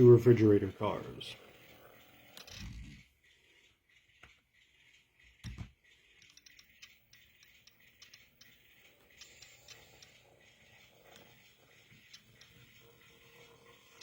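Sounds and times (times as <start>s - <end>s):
model train light clicking: 5.1s - 11.3s.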